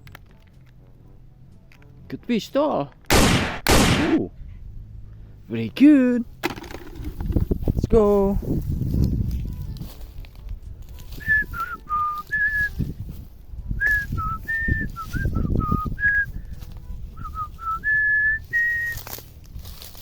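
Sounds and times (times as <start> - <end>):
person whistling a tune: 11.2 - 12.9, 13.7 - 19.1.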